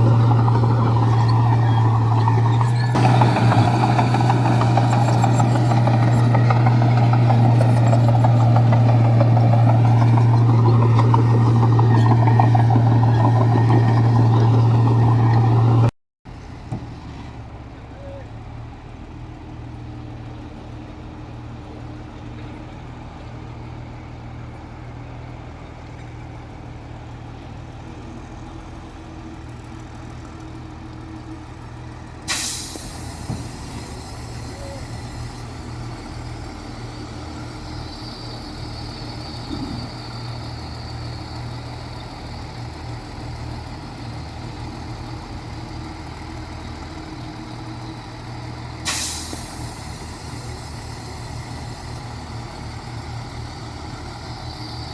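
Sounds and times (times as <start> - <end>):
truck air brakes hissing: 0.0 - 15.9, 32.2 - 44.0, 46.2 - 54.9
diesel engine running: 0.0 - 54.9.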